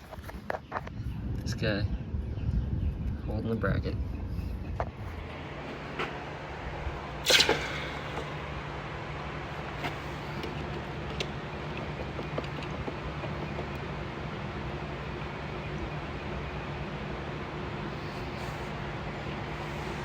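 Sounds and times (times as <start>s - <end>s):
steady low hum: 0.0s - 20.0s
metal clank: 7.2s - 8.5s.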